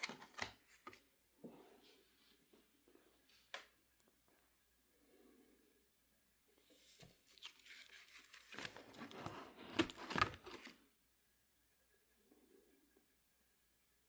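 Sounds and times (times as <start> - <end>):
paper pages crinkling: 6.8 - 10.8.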